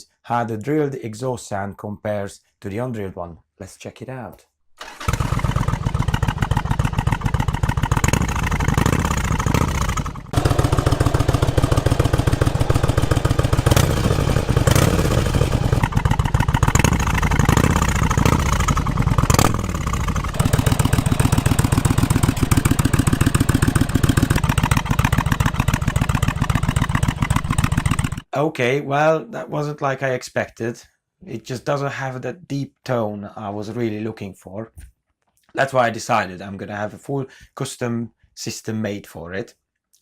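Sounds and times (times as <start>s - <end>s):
motorcycle engine idling and revving: 4.8s - 28.3s.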